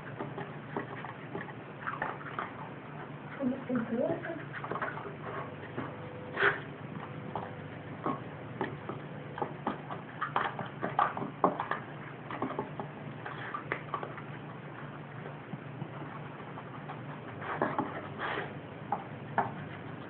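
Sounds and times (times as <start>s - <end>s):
dog claws clicking on floor: 6.5s - 20.0s.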